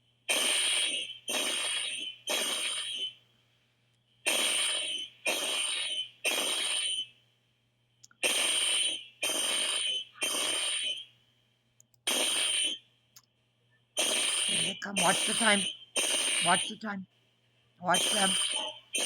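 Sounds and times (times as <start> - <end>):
fire alarm horn blasts: 14.0 - 17.0, 17.9 - 18.8.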